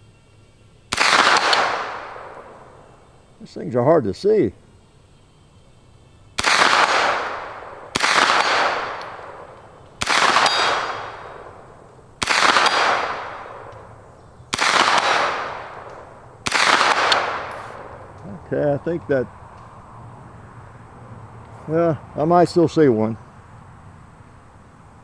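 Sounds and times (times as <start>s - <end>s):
gunshots with long echo: 0.9s - 3.3s, 6.4s - 18.3s.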